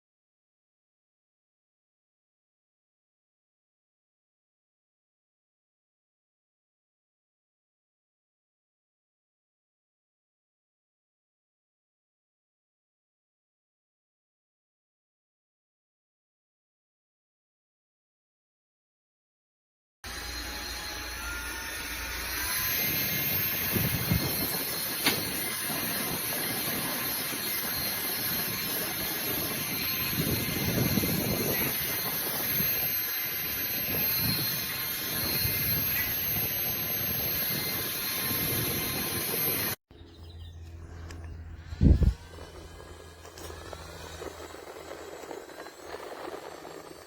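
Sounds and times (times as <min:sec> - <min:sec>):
handheld fan whooshing and whining: 0:20.1 - 0:47.0.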